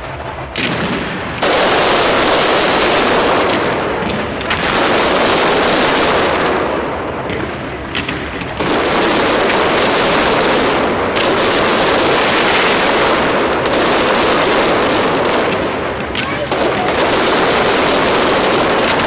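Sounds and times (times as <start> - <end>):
fireworks bursting and crackling: 0.0 - 19.0.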